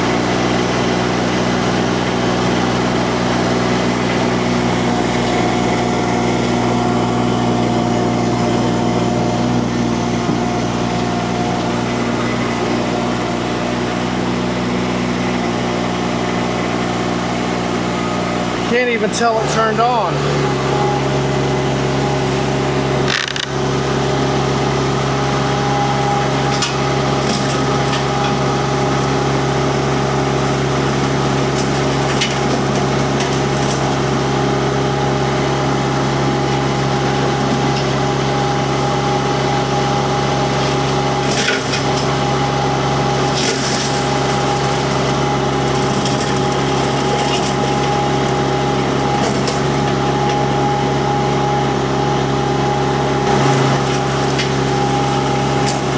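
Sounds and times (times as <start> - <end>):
diesel engine under load: 0.0 - 55.9
wood cracking and splintering: 23.0 - 23.6, 26.2 - 34.9, 40.3 - 50.4, 53.2 - 55.9.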